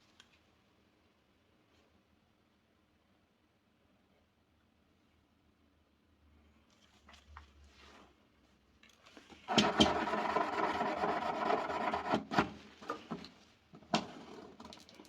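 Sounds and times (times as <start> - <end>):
tool rasping in rubber tyre: 9.5 - 12.5.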